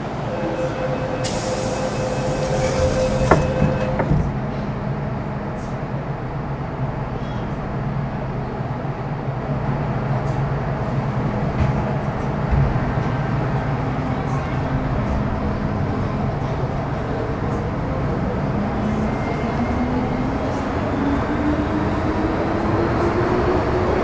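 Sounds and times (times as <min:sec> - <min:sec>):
train wheels rumbling: 0:00.0 - 0:07.6.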